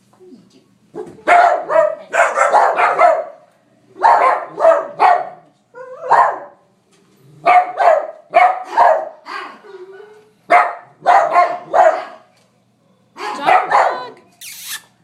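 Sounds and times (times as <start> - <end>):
dog barking: 0.9 - 3.4, 4.0 - 5.4, 6.0 - 6.6, 7.4 - 12.3, 13.0 - 14.2.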